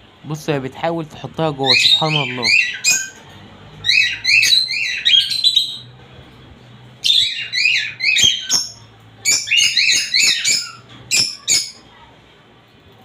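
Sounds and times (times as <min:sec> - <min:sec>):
lovebirds shrill chirping: 0:01.6 - 0:05.9, 0:07.0 - 0:11.8.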